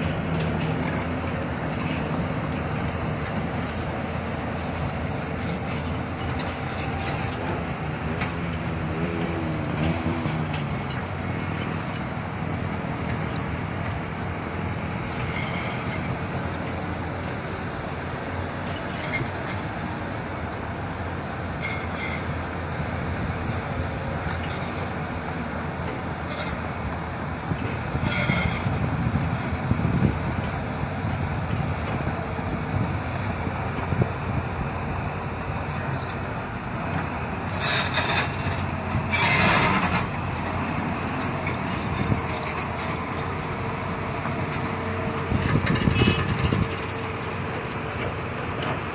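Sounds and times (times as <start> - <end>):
diesel construction machinery running: 0.0 - 48.9
high-pitched squeaks: 0.8 - 11.8, 37.4 - 43.4, 44.5 - 46.9.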